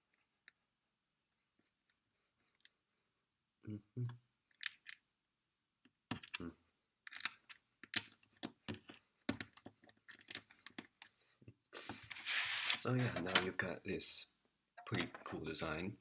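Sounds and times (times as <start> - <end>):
plastic bricks clicking: 4.5 - 5.0, 7.0 - 11.1.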